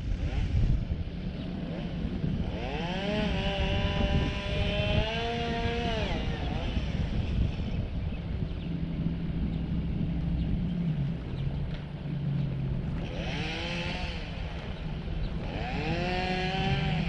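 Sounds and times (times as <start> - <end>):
motor running: 1.7 - 17.0.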